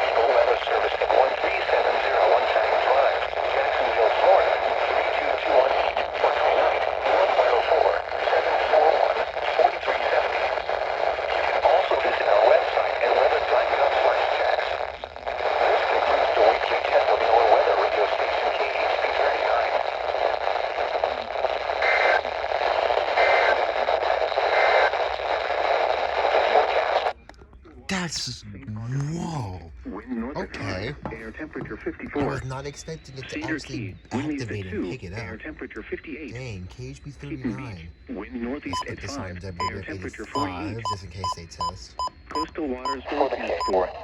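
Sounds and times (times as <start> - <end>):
muffled radio speech: 0.0 - 25.4, 27.4 - 44.0
faint data tone bursts: 32.2 - 43.9.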